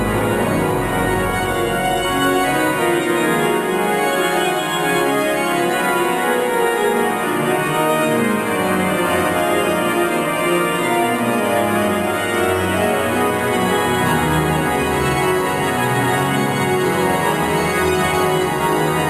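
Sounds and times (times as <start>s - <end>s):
organ playing held chords: 0.0s - 19.0s.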